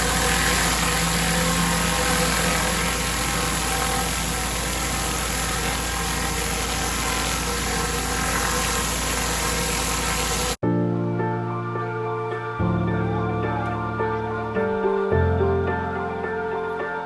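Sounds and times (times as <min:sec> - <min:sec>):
pressure washer engine running: 0:00.0 - 0:10.6
pressure washer hiss: 0:00.0 - 0:10.6.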